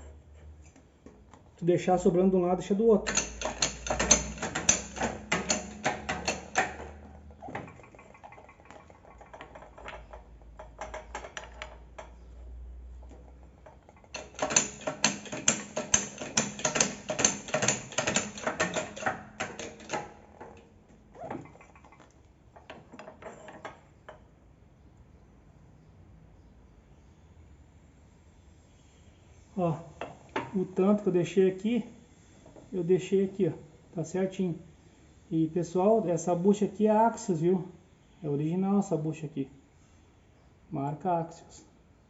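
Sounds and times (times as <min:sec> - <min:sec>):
ratchet wrench clicking: 0:03.0 - 0:07.0, 0:14.2 - 0:20.2.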